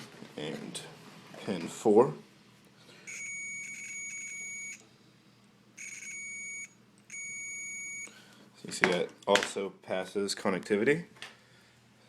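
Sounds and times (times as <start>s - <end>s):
continuity tester beeping: 3.0s - 4.9s, 5.8s - 8.1s.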